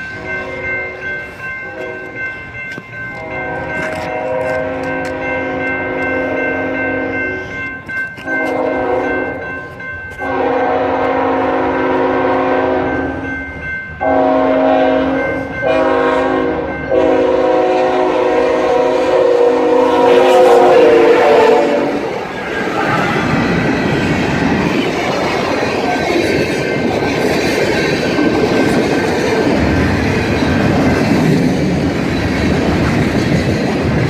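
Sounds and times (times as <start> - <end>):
train rumble: 0.0 - 34.0
locomotive air horn blasts: 3.2 - 7.1, 8.2 - 9.4, 10.2 - 13.1, 14.0 - 22.2.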